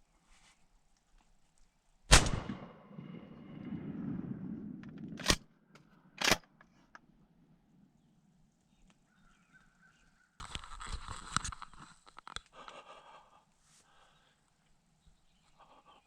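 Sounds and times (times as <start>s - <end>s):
shotgun blast with echo: 2.1s - 3.1s.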